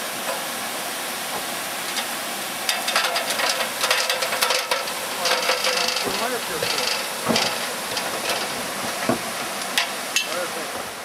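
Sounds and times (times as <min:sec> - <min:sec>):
steady hiss: 0:00.0 - 0:11.0.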